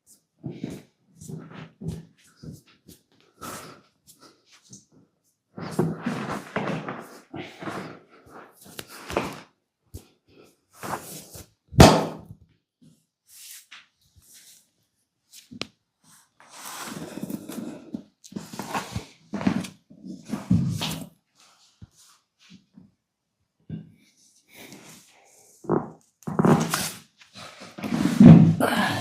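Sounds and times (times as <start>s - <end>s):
sharp slap: 11.8s - 12.2s.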